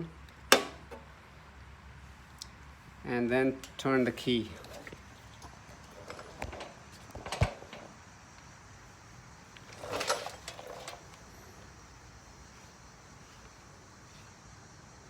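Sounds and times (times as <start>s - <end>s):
rustling scrape: 9.7s - 11.1s.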